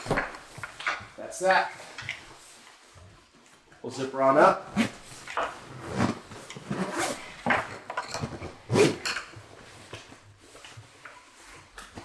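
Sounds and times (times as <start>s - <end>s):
handling of a bag: 0.0s - 3.8s, 4.6s - 12.0s
zipper being pulled shut: 4.7s - 9.3s.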